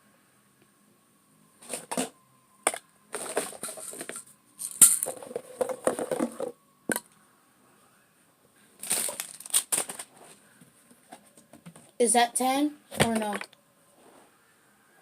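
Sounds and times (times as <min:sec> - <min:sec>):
bottles knocking and clinking: 0:02.7 - 0:07.0.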